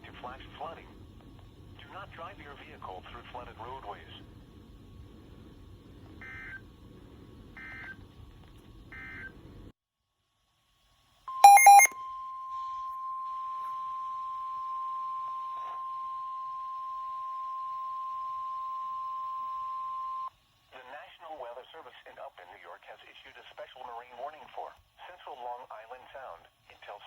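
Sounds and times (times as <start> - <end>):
faint radio hiss: 0.0 - 6.0, 20.3 - 27.0
steady single-pitch alert tone: 11.4 - 12.0.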